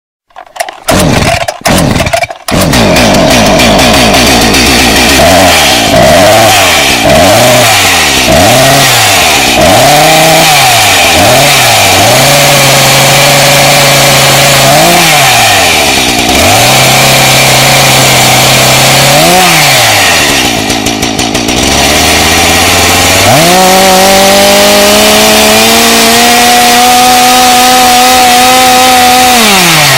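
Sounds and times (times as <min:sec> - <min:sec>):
chainsaw engine revving: 0:00.3 - 0:29.9.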